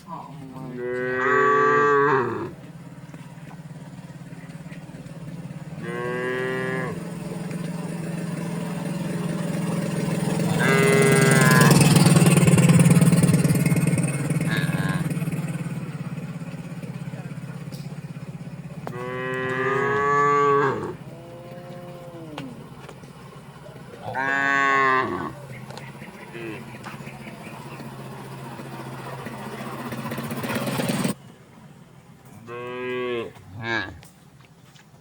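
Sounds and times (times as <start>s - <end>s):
cattle mooing: 0.5s - 2.6s, 5.7s - 7.1s, 10.4s - 11.8s, 14.4s - 15.2s, 18.8s - 22.8s, 24.0s - 25.4s, 26.3s - 26.7s, 32.4s - 34.1s.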